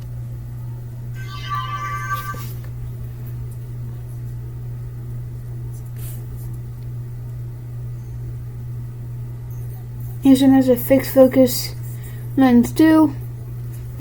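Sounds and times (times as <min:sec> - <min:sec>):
low electrical hum: 0:00.0 - 0:14.0.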